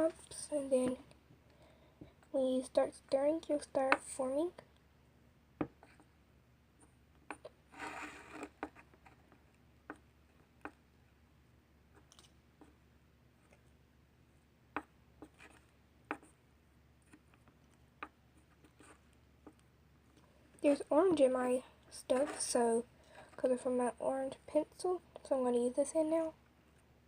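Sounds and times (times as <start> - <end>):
pencil scraping slime in bowl: 7.3 - 8.8.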